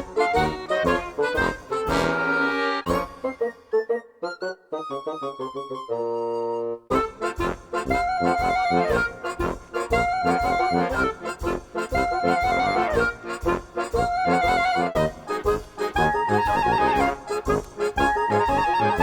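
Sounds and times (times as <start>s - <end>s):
upbeat accordion tune: 0.0s - 19.0s.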